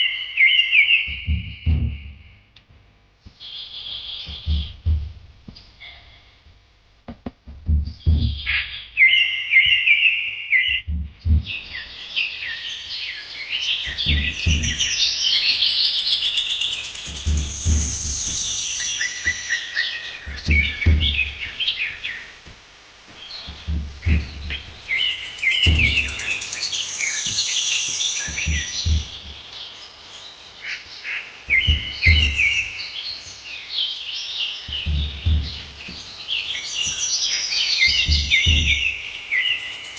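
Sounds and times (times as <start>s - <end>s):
small birds chirping: 0.0s - 2.5s, 3.3s - 6.6s, 7.6s - 39.9s
dull low thumps: 1.1s - 3.4s, 4.2s - 5.8s, 6.5s - 8.8s, 10.7s - 12.0s, 13.8s - 15.6s, 17.0s - 19.5s, 20.2s - 29.6s, 31.5s - 32.8s, 34.7s - 37.1s, 37.8s - 39.1s.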